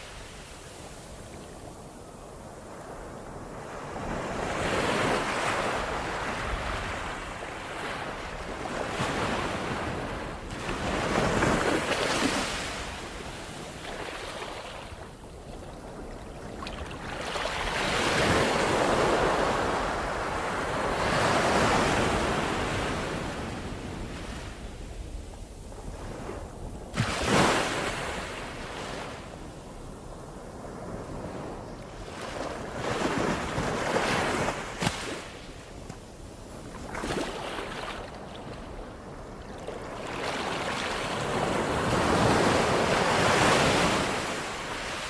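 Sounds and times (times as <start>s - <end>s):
ocean waves breaking: 2.9s - 15.2s, 26.0s - 29.3s, 30.4s - 35.7s.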